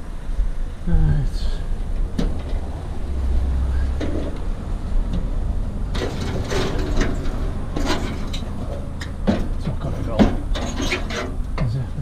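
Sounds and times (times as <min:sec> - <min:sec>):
low steady rumble: 0:00.0 - 0:12.0
scrap metal scraping and clattering: 0:05.9 - 0:11.5.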